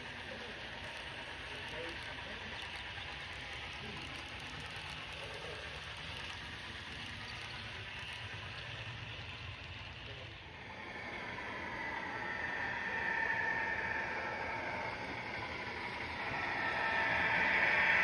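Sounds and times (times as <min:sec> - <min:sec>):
steam locomotive hissing: 0:10.5 - 0:18.0
higher steady tone: 0:10.6 - 0:18.0.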